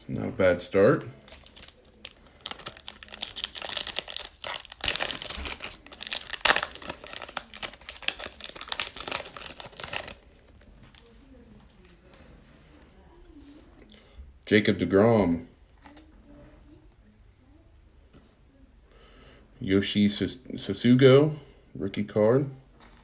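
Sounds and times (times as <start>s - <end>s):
foil wrapper tearing and crinkling: 1.2s - 10.3s.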